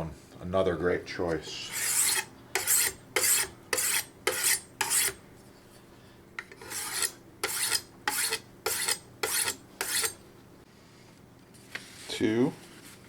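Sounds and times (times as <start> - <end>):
knife scraping on whetstone: 1.7 - 5.2, 6.5 - 10.2.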